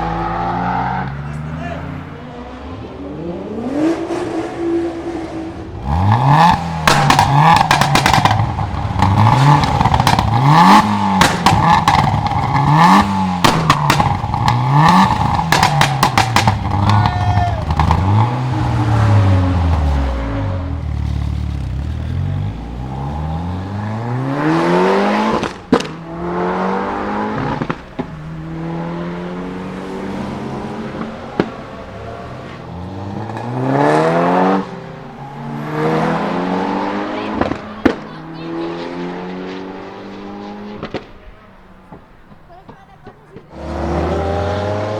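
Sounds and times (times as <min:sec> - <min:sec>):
car accelerating: 0:00.0 - 0:44.9
car engine revving: 0:00.0 - 0:44.9
loud exhaust bang: 0:05.7 - 0:42.5
anti-lag pops and bangs: 0:06.4 - 0:18.5, 0:24.2 - 0:29.1, 0:40.0 - 0:42.5.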